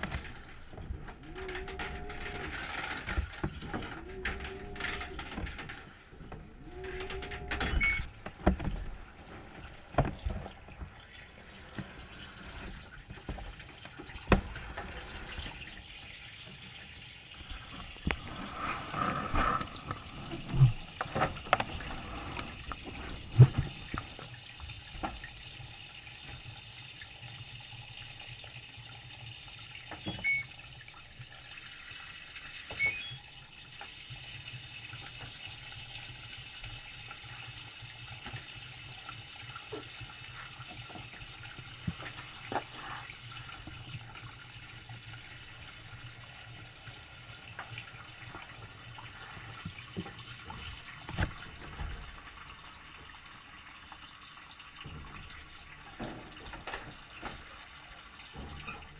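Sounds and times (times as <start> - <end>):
knocks and clunks: 0.0 - 11.0, 54.8 - 58.9
low steady hum: 0.0 - 25.7
washing machine filling with water: 0.0 - 58.9.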